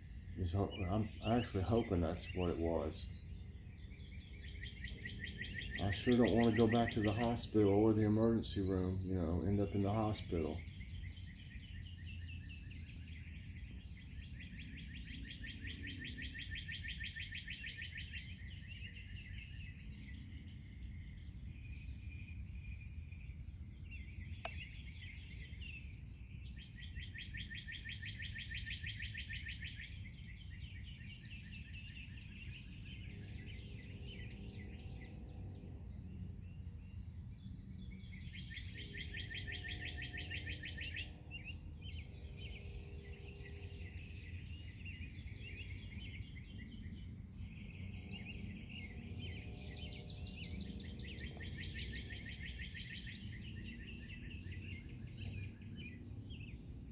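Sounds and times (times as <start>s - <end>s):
songbirds chirping trills: 0.0s - 56.9s
low background rumble: 30.3s - 56.9s.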